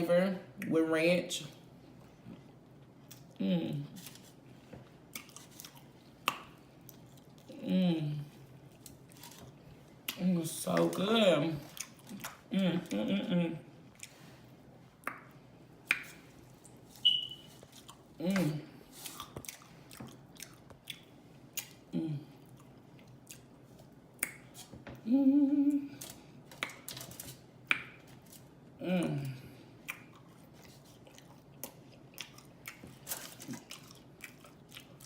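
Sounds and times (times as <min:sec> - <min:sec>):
person humming mm: 0:03.4 - 0:03.9, 0:07.5 - 0:08.3, 0:18.2 - 0:18.8, 0:21.9 - 0:22.4, 0:25.0 - 0:26.0, 0:28.8 - 0:29.4
open-mouth chewing and lip smacking: 0:05.1 - 0:07.6, 0:11.7 - 0:12.5, 0:19.0 - 0:24.7, 0:29.8 - 0:35.0.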